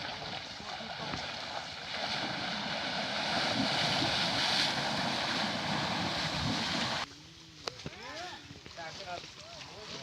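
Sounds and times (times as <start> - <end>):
water splashing and spraying: 0.0 - 7.1.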